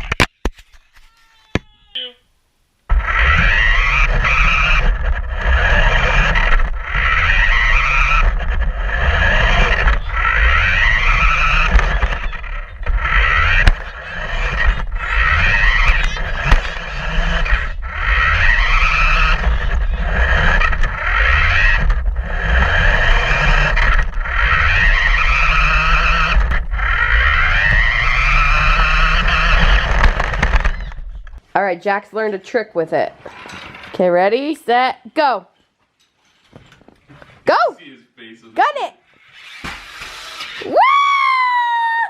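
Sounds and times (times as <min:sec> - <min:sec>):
toy truck motor whining: 0:02.9 - 0:31.4, 0:39.1 - 0:41.0.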